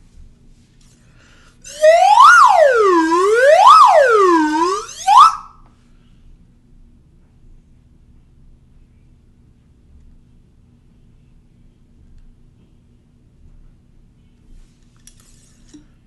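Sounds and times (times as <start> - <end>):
slide whistle sliding: 1.7 - 5.5.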